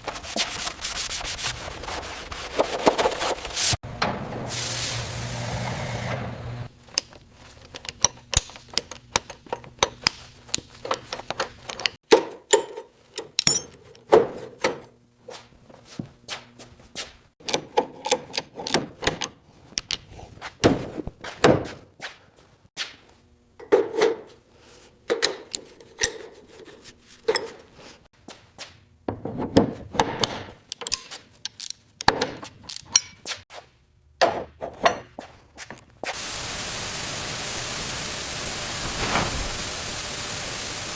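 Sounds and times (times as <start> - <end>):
hand tools tapping and clicking: 6.9 - 14.9, 25.1 - 26.4, 30.0 - 33.4
loud thud: 38.8 - 39.9.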